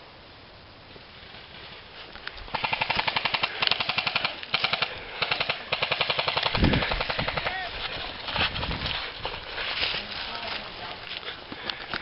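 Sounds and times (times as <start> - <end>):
airsoft guns firing full-auto bursts: 2.5 - 8.0.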